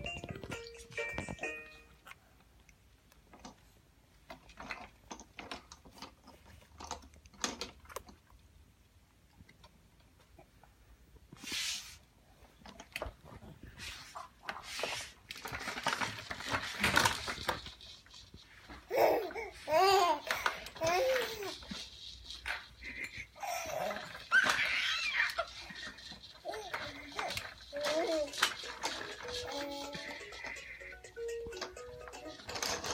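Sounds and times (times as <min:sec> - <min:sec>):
plastic toys rattling and clicking: 0:03.2 - 0:08.3, 0:12.6 - 0:32.9
rustling: 0:11.3 - 0:30.6, 0:31.7 - 0:32.9.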